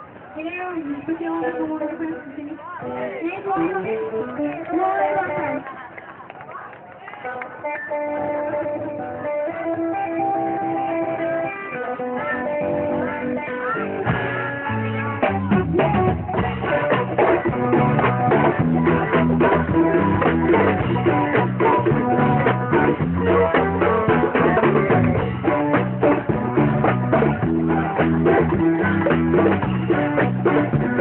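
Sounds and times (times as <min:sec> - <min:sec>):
guitar: 0:00.0 - 0:31.0
bass: 0:07.4 - 0:31.0
drum kit: 0:12.6 - 0:31.0.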